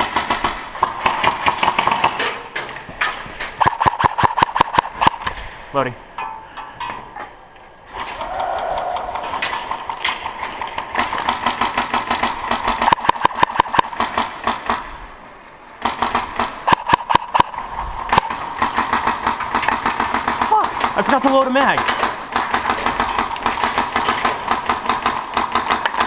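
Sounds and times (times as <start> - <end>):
airsoft gun firing bursts: 0.0 - 2.3, 3.6 - 5.2, 9.7 - 15.0, 15.8 - 26.0.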